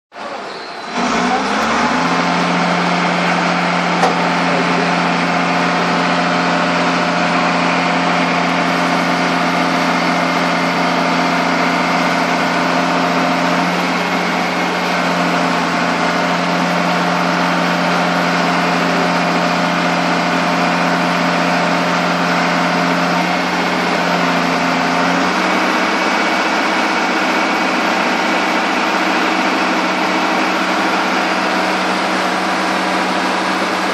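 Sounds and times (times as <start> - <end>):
engine running steadily: 0.2 - 33.9.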